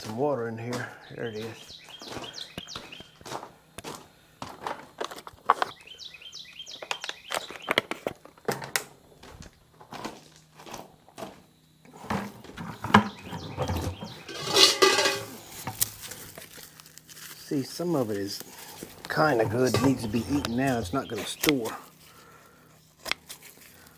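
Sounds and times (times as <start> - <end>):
garlic skins crackling and rustling: 12.0 - 23.9.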